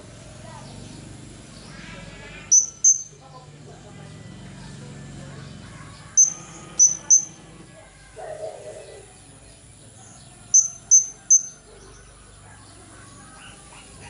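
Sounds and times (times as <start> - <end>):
parrot high-pitched calls: 2.5 - 3.2, 6.2 - 7.4.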